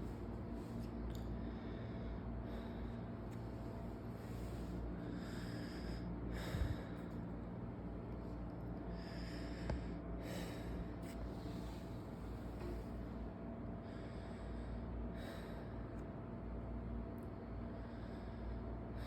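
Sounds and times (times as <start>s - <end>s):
person breathing deeply: 4.1s - 7.2s.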